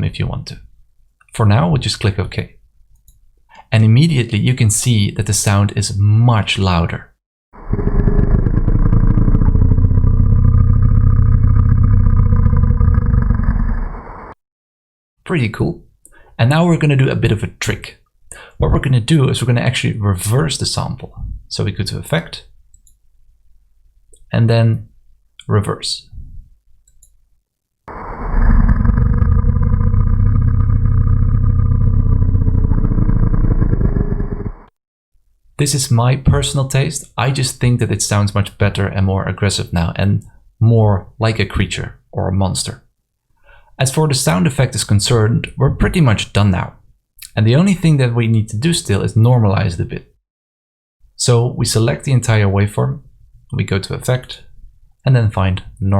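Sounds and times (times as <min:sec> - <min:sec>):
low rumbling monster growl: 0:07.6 - 0:14.4, 0:27.9 - 0:34.7.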